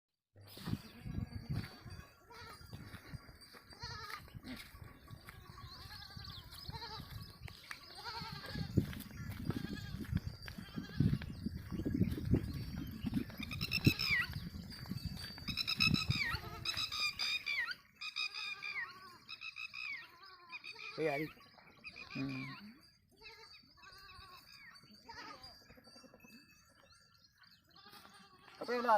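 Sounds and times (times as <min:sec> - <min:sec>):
goats bleating: 0:03.7 - 0:07.2, 0:07.9 - 0:11.2, 0:16.2 - 0:17.2, 0:18.3 - 0:19.3, 0:27.7 - 0:28.9.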